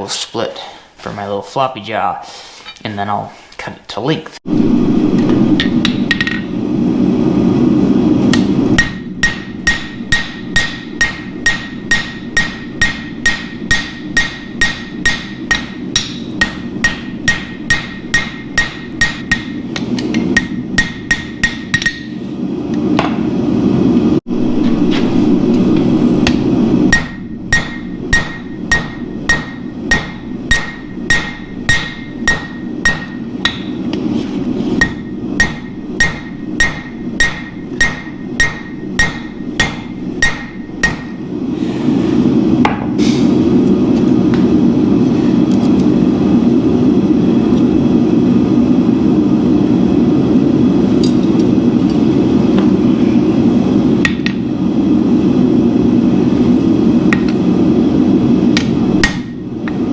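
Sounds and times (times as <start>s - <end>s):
low rushing noise: 4.5s - 12.8s, 22.3s - 36.0s
hammer striking steel on anvil: 8.3s - 22.2s, 26.2s - 34.0s, 34.8s - 41.2s, 58.6s - 59.8s.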